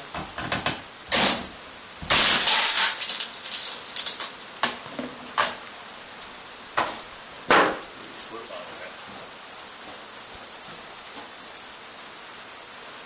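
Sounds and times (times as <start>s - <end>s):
short hissing bursts: 1.1s - 4.6s.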